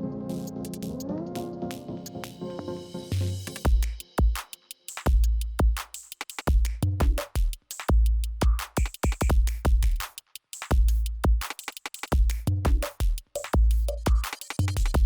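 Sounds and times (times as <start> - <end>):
deep kick drum hits: 3.7 - 4.4.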